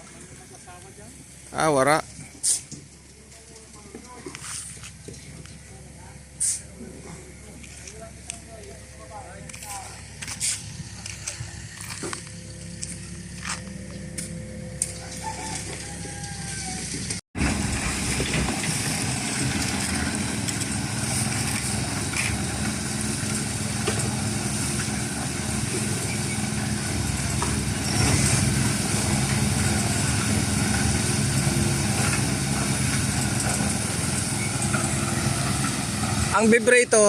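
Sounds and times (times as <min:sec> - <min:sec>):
small petrol engine running: 0:09.6 - 0:37.0.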